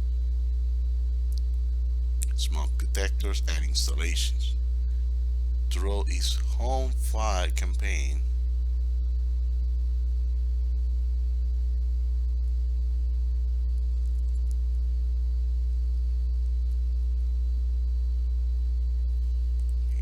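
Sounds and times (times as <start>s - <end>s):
low electrical hum: 0.0s - 20.0s.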